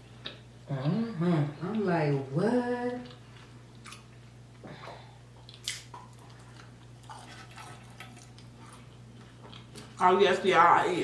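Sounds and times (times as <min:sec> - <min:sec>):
faint steady hum: 0:00.0 - 0:11.0
chewing food: 0:02.8 - 0:10.0.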